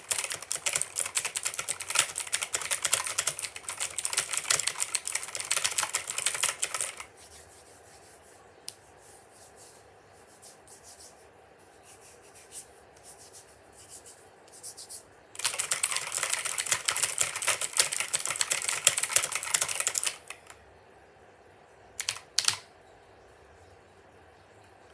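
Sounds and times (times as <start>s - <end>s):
mechanical keyboard typing: 0.0s - 7.1s, 15.4s - 20.6s, 22.0s - 22.7s.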